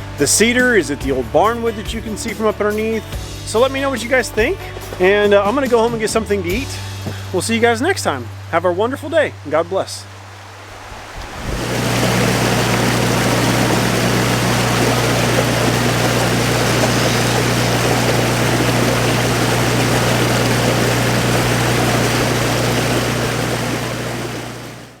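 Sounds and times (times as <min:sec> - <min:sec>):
mechanical hum: 0:10.3 - 0:25.0.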